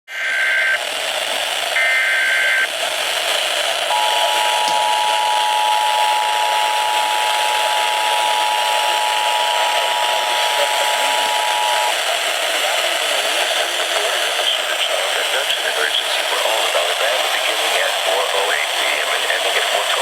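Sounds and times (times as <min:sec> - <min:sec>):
radio static hiss: 0:00.1 - 0:20.0
two-tone alert signal: 0:03.9 - 0:12.0
warbling data tones: 0:03.9 - 0:12.5.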